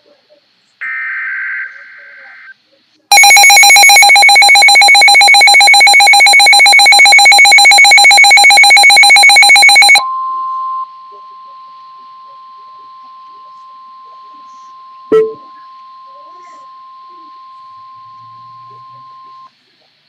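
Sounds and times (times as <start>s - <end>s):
loud two-tone alarm: 3.1s - 10.2s
steady single-pitch tone: 3.1s - 19.5s.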